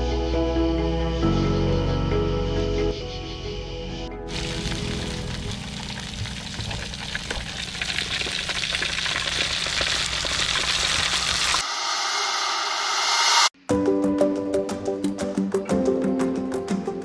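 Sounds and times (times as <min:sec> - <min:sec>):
campfire crackling and popping: 0:04.3 - 0:11.6.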